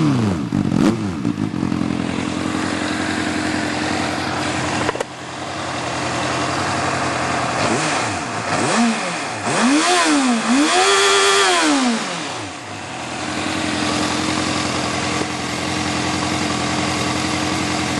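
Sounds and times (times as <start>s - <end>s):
motorcycle engine idling and revving: 0.0s - 17.9s.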